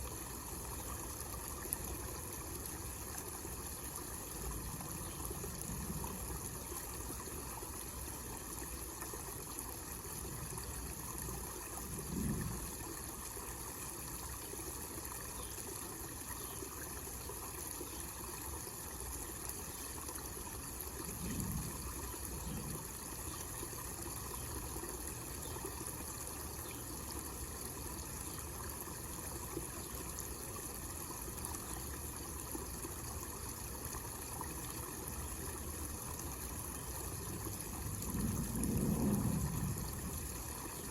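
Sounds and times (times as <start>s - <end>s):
water trickling into pond: 0.0s - 40.9s
low rumbles: 37.8s - 40.4s.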